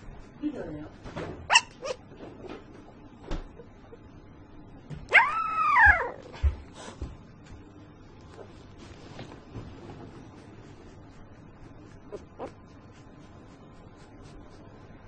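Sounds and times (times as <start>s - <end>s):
puppy whining: 1.5s - 2.1s, 5.1s - 6.5s, 12.0s - 12.6s.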